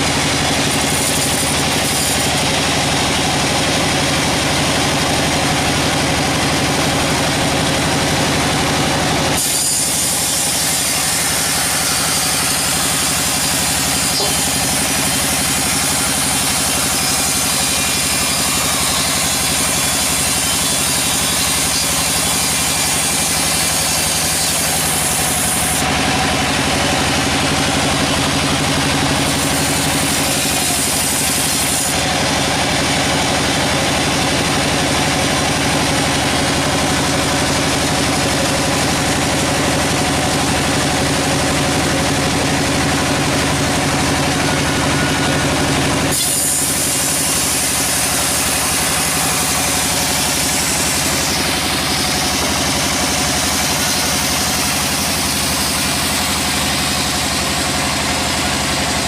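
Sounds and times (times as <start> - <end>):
sawmill engine humming: 0.0 - 59.0.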